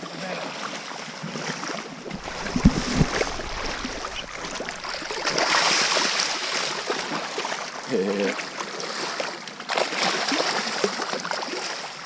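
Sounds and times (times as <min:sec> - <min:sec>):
loud water splash: 0:02.0 - 0:06.7
river water rushing: 0:02.0 - 0:06.7
low thumps: 0:02.1 - 0:05.5.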